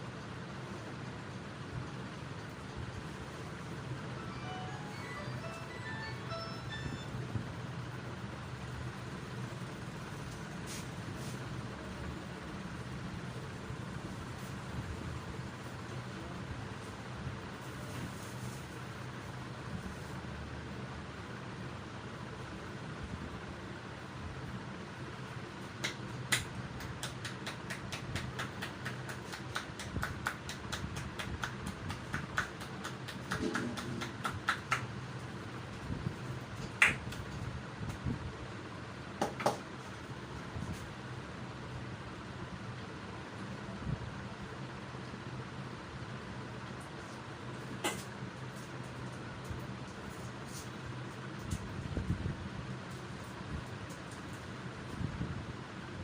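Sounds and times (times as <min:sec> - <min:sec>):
steady low hum: 0:00.0 - 0:56.0
hands tapping and slapping: 0:25.8 - 0:34.9, 0:36.7 - 0:37.3, 0:39.2 - 0:39.6.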